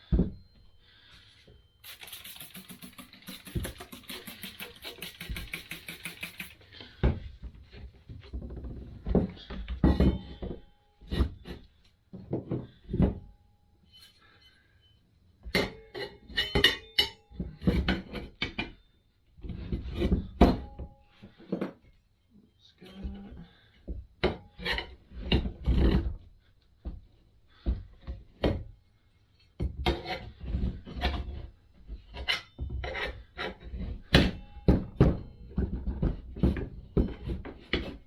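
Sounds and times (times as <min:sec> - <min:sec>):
hissing rustling noise: 0:01.8 - 0:06.6.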